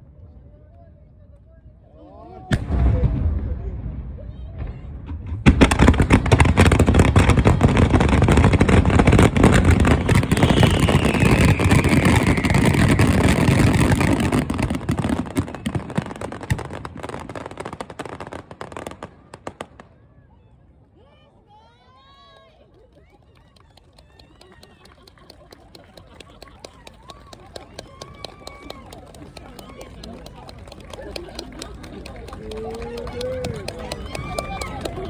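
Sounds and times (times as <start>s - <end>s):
fireworks bangs and crackling: 2.5s - 20.2s
firework whistle falling in pitch: 10.0s - 13.6s.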